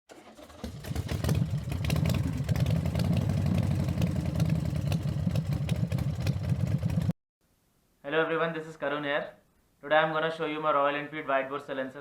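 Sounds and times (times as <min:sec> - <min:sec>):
motorcycle engine idling: 0:00.6 - 0:07.1.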